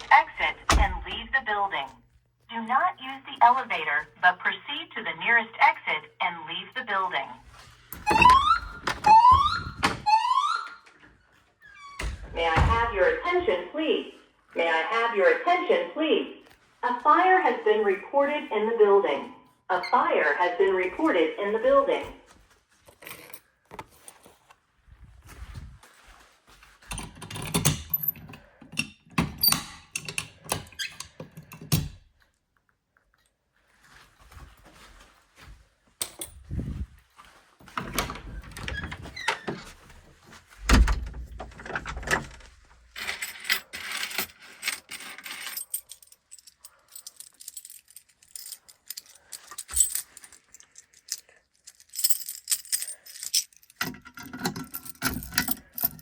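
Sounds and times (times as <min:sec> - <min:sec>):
handling clicks and knocks: 0:40.8 - 0:56.0
handling rustling: 0:42.3 - 0:56.0.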